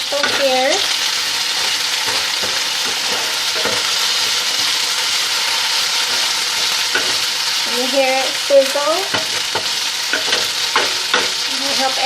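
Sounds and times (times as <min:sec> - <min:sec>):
chicken sizzling in frying pan: 0:00.0 - 0:12.0
spatula knocking in pan: 0:01.6 - 0:05.2, 0:06.0 - 0:07.4, 0:09.0 - 0:11.5.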